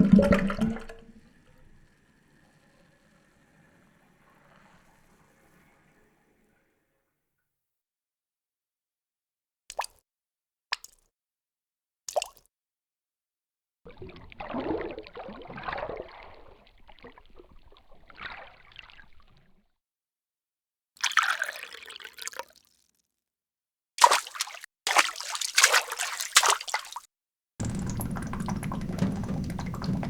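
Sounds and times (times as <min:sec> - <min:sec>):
water splashing and sloshing: 0:00.0 - 0:01.3, 0:13.9 - 0:19.2, 0:21.0 - 0:22.6, 0:24.0 - 0:30.0
water trickling and gurgling: 0:00.0 - 0:01.7, 0:24.0 - 0:27.0, 0:27.6 - 0:30.0.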